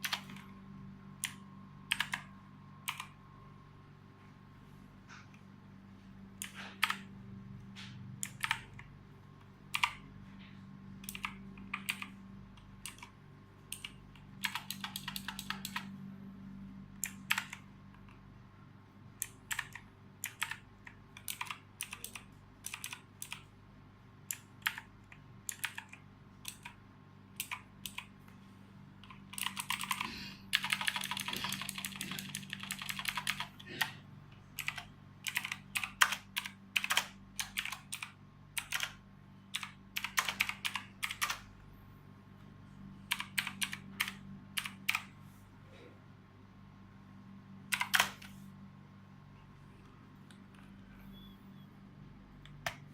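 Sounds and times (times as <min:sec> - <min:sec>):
mechanical keyboard typing: 0:00.0 - 0:00.5, 0:01.2 - 0:03.2, 0:06.4 - 0:07.1, 0:07.8 - 0:08.9, 0:09.7 - 0:10.1, 0:11.0 - 0:15.9, 0:17.0 - 0:18.1, 0:19.2 - 0:23.5, 0:24.2 - 0:28.2, 0:29.0 - 0:33.9, 0:34.6 - 0:41.5, 0:43.1 - 0:45.1, 0:47.7 - 0:48.4.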